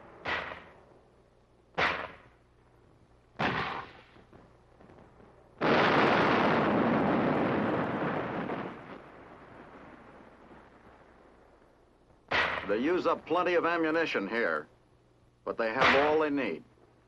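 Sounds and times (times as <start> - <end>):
heavy gunshots: 3.4 - 4.1, 5.6 - 8.6, 15.8 - 16.3.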